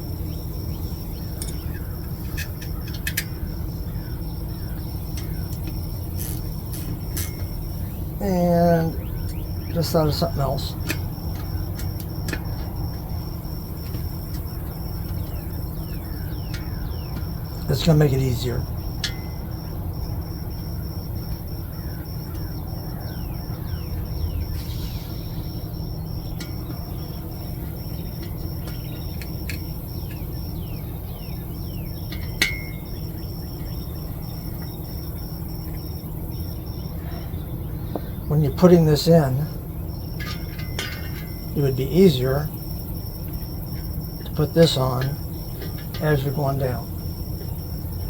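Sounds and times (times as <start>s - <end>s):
insect chirping: 0.0s - 48.0s
steady low hum: 0.0s - 48.0s
steady low rumble: 0.0s - 48.0s
light clicks of small parts: 1.4s - 3.3s
small clicks: 5.2s - 7.5s.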